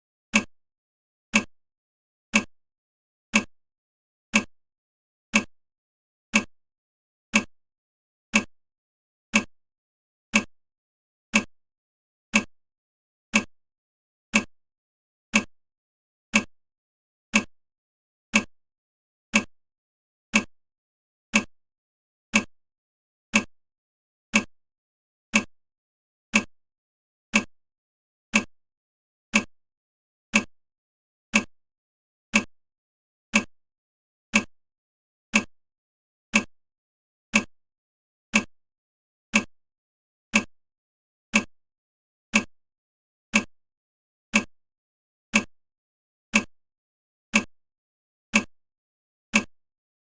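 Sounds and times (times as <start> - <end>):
timer ticking: 0.3 - 0.5, 1.3 - 1.5, 2.3 - 2.5, 3.3 - 3.5, 4.3 - 4.5, 5.3 - 5.5, 6.3 - 6.5, 7.3 - 7.5, 8.3 - 8.5, 9.3 - 9.5, 10.3 - 10.5, 11.3 - 11.5, 12.3 - 12.5, 13.3 - 13.5, 14.3 - 14.5, 15.3 - 15.5, 16.3 - 16.5, 17.3 - 17.5, 18.3 - 18.5, 19.3 - 19.5, 20.3 - 20.5, 21.3 - 21.5, 22.3 - 22.5, 23.3 - 23.5, 24.3 - 24.5, 25.3 - 25.5, 26.3 - 26.5, 27.3 - 27.5, 28.3 - 28.5, 29.3 - 29.5, 30.3 - 30.5, 31.3 - 31.5, 32.3 - 32.5, 33.3 - 33.5, 34.3 - 34.5, 35.3 - 35.5, 36.3 - 36.5, 37.3 - 37.5, 38.3 - 38.5, 39.3 - 39.5, 40.3 - 40.5, 41.3 - 41.5, 42.3 - 42.5, 43.3 - 43.5, 44.3 - 44.5, 45.3 - 45.5, 46.3 - 46.5, 47.3 - 47.5, 48.3 - 48.5, 49.3 - 49.5.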